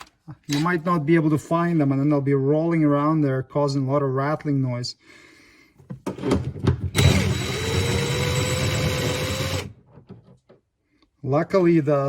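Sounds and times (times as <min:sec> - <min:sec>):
cordless power driver running: 0:07.0 - 0:09.8.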